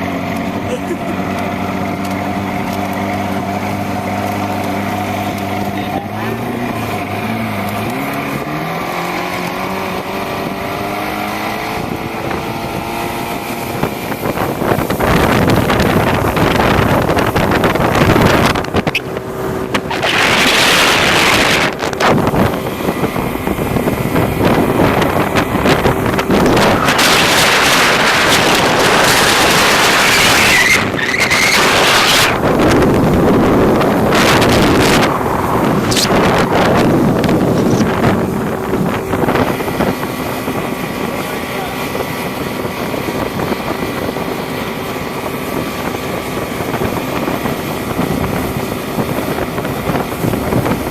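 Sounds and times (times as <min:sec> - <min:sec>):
motorboat engine running: 0:00.0 - 0:50.9
wind on microphone: 0:00.0 - 0:50.9
high squealing tone: 0:26.4 - 0:32.4.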